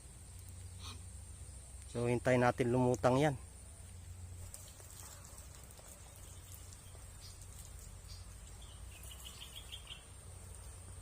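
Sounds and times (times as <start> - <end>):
insects droning: 0.0 - 11.0.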